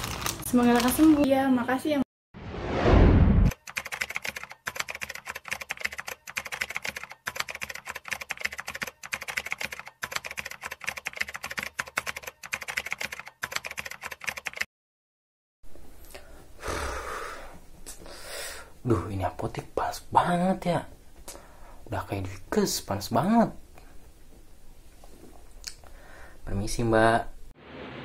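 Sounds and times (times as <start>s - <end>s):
rapid typing on keyboard: 3.5s - 14.7s.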